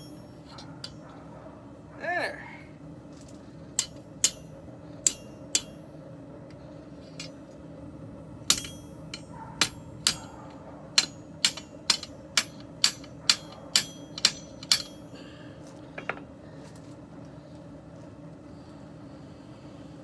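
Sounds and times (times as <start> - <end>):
hammer striking steel on anvil: 0.0 - 1.0, 3.8 - 6.0, 8.4 - 15.3.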